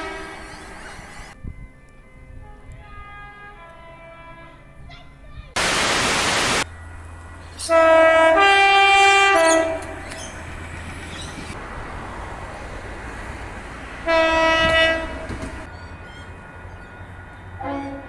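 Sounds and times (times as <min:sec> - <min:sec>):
locomotive air horn: 0:00.0 - 0:01.0, 0:02.4 - 0:04.7, 0:07.4 - 0:10.1, 0:14.0 - 0:15.7, 0:17.6 - 0:18.0
train rumble: 0:06.4 - 0:18.0.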